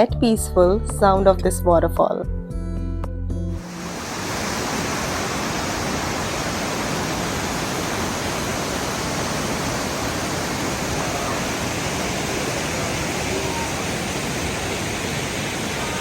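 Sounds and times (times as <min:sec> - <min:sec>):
waterfall rushing: 0:03.6 - 0:16.0.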